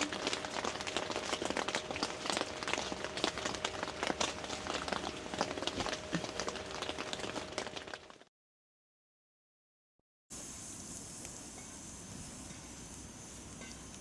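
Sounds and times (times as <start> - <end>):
faint steady hum: 0.0 - 8.0
rain pattering: 0.0 - 8.3.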